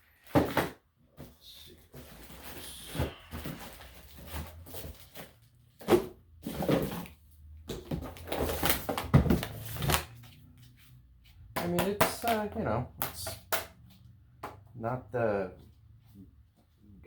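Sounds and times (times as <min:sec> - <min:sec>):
plastic parts knocking and clattering: 0:00.2 - 0:01.3, 0:03.0 - 0:10.1, 0:11.6 - 0:13.8
plastic packaging rustling: 0:01.9 - 0:07.1, 0:07.9 - 0:10.3.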